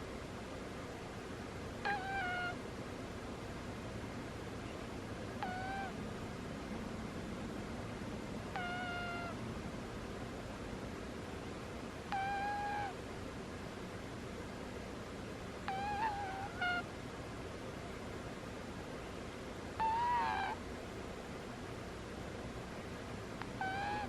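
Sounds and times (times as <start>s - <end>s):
cat snoring with squeaks: 1.8s - 2.6s, 5.4s - 5.9s, 8.5s - 9.4s, 12.1s - 12.9s, 15.6s - 16.8s, 19.8s - 20.6s, 23.5s - 24.0s.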